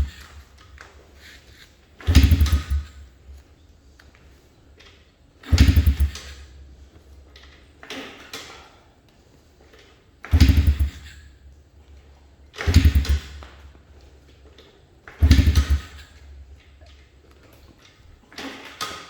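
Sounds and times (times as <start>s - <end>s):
dirt bike kick-start clunks: 2.0s - 3.3s, 5.4s - 6.7s, 10.2s - 11.3s, 12.6s - 13.7s, 15.1s - 17.1s.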